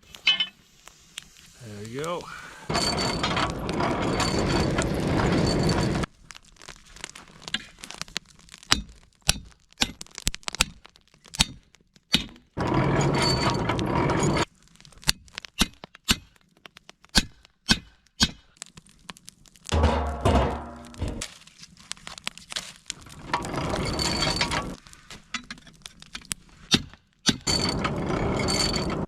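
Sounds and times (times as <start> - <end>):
charcoal fire crackling and popping: 0.0 - 29.0
hand-cranked forge blower whirring: 2.7 - 6.1, 12.6 - 14.4, 27.4 - 29.0.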